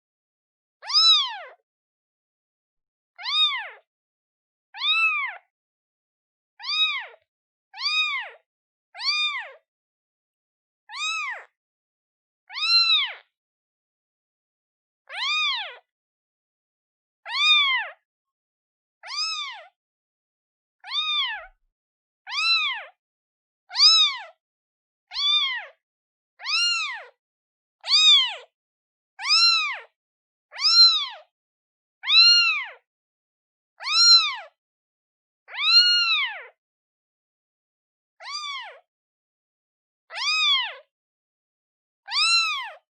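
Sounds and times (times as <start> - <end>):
kitten meowing: 0.8 - 1.6, 3.2 - 3.8, 4.8 - 5.4, 6.6 - 7.2, 7.8 - 8.4, 9.0 - 9.6, 10.9 - 11.5, 12.5 - 13.2, 15.1 - 15.8, 17.3 - 18.0, 19.0 - 19.7, 20.8 - 21.6, 22.3 - 23.0, 23.7 - 24.3, 25.1 - 25.7, 26.4 - 27.1, 27.8 - 28.4, 29.2 - 29.9, 30.5 - 31.2, 32.0 - 32.8, 33.8 - 34.6, 35.5 - 36.6, 38.2 - 38.8, 40.1 - 40.8, 42.1 - 42.8.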